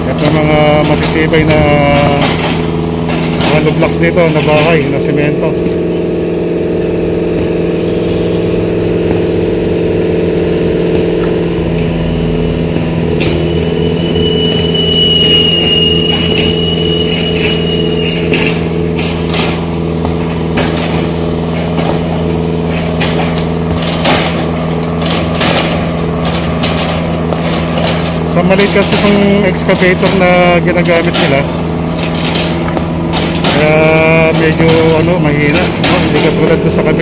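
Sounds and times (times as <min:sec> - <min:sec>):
excavator diesel engine running: 0:00.0 - 0:37.0
high thin squeal: 0:13.2 - 0:18.8.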